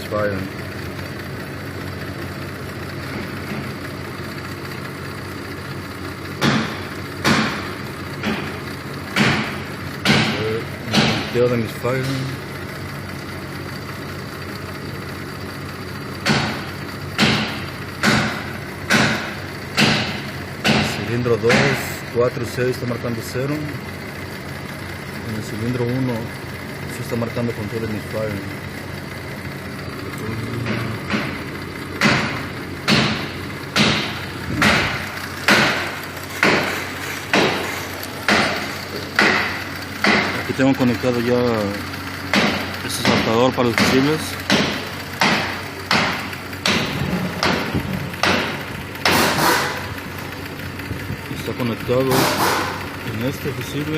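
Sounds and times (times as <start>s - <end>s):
car engine idling: 0.0s - 53.9s
sharp knocks: 6.4s - 11.4s, 16.2s - 21.9s, 30.6s - 40.5s, 42.3s - 49.9s, 52.1s - 52.8s.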